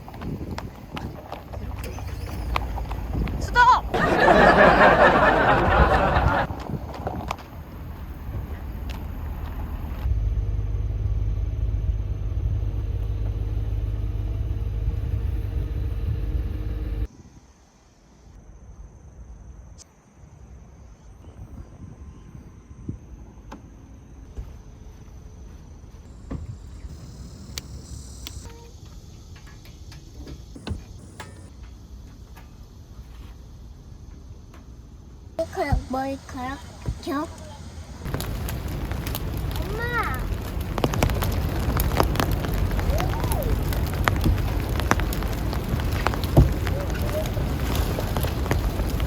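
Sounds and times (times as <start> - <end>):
car engine rumble: 0.0 - 17.1, 24.2 - 49.0
low steady rumble: 0.0 - 17.1.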